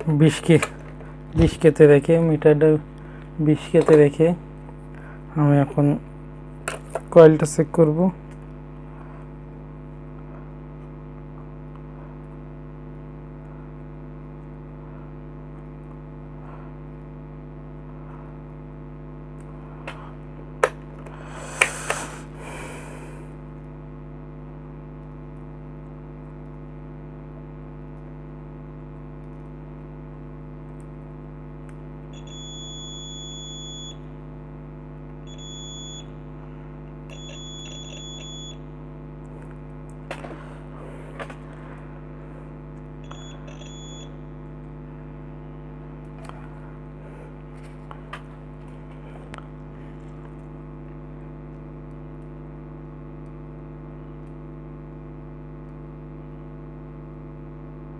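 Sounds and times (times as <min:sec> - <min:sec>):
steady electrical hum: 0:00.0 - 0:57.9
multimeter beeping: 0:32.2 - 0:34.1, 0:35.3 - 0:36.2, 0:37.1 - 0:38.7, 0:43.0 - 0:44.2.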